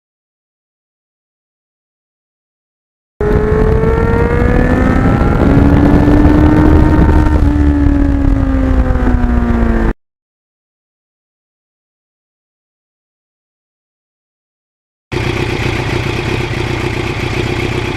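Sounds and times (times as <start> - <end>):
motorcycle engine running: 3.2 - 9.9, 15.1 - 17.9.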